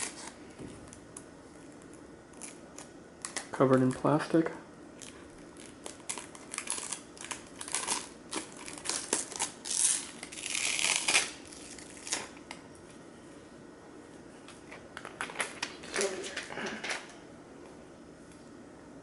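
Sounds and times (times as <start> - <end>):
plastic film crinkling: 5.0 - 12.4.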